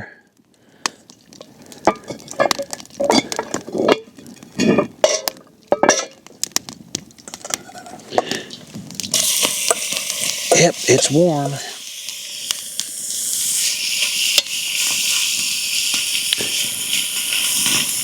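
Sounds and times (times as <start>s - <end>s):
metal utensils clinking: 2.4s - 6.2s
meat sizzling in hot oil: 9.0s - 18.0s.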